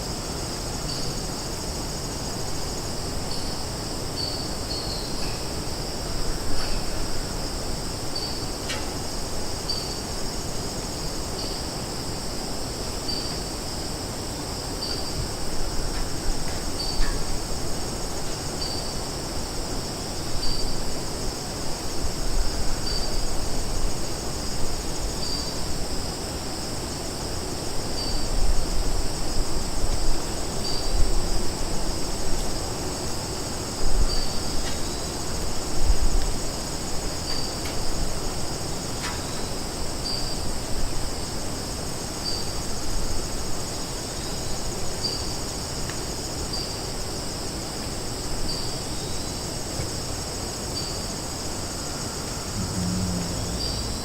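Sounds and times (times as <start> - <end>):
high-pitched insect chorus: 0.0 - 54.0
low rumbling: 52.5 - 54.0.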